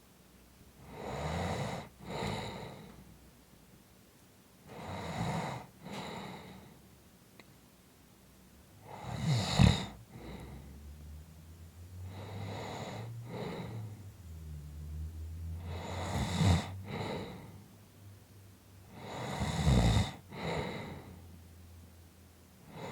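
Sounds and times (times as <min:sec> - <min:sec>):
person snoring: 0:00.9 - 0:03.0, 0:04.7 - 0:06.6, 0:08.8 - 0:11.2, 0:12.0 - 0:17.6, 0:18.9 - 0:21.2.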